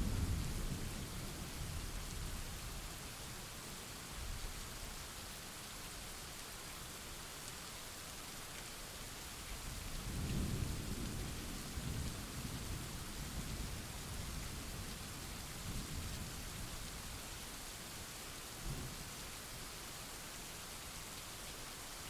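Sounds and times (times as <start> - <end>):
thunder rumbling: 0.0 - 1.0.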